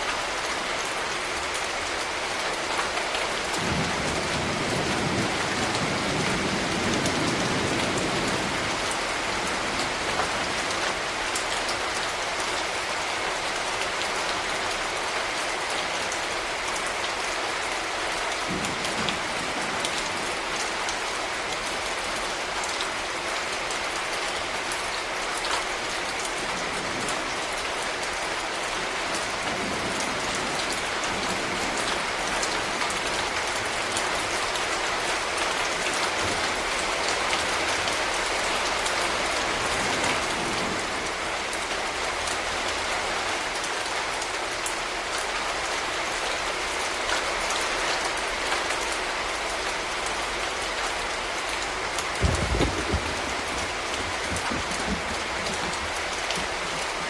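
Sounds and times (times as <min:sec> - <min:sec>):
rain falling: 0:00.0 - 0:57.0.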